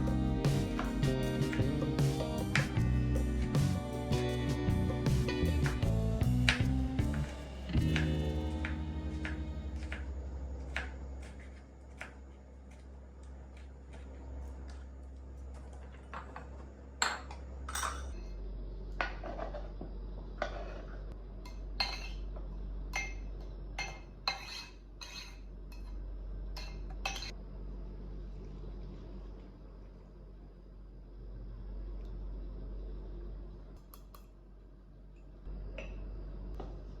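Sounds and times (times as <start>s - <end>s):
steady low hum: 0.0s - 37.0s
dishes and cutlery clinking: 17.0s - 18.2s, 21.5s - 22.3s, 23.8s - 26.0s, 26.6s - 27.4s.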